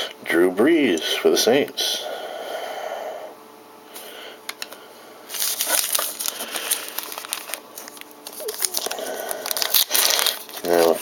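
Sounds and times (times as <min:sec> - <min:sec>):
foil wrapper crinkling: 0:05.3 - 0:11.0.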